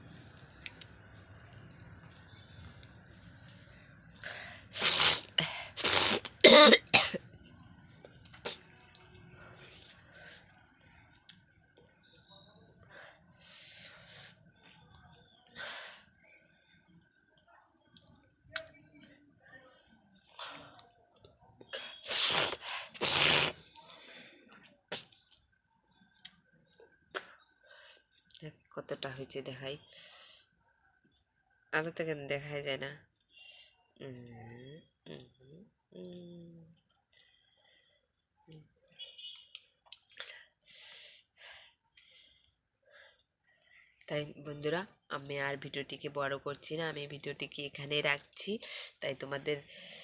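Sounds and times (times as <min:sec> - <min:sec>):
person hawking and spitting: 0:04.8 - 0:07.1, 0:22.1 - 0:23.6
person coughing and hacking: 0:06.2 - 0:07.2.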